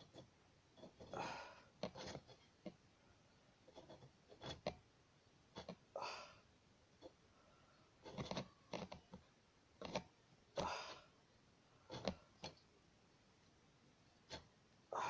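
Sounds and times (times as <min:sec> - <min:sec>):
dry scrapes and clicks: 0:00.0 - 0:02.8, 0:03.7 - 0:04.8, 0:05.5 - 0:05.8, 0:08.0 - 0:10.9, 0:11.9 - 0:12.6.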